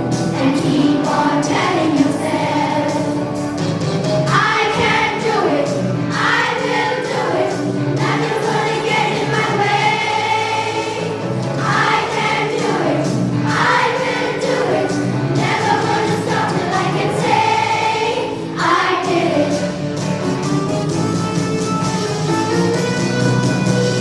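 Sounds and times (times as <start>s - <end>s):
group of voices singing: 0.0s - 3.2s, 4.3s - 19.7s
musical accompaniment: 0.0s - 24.0s.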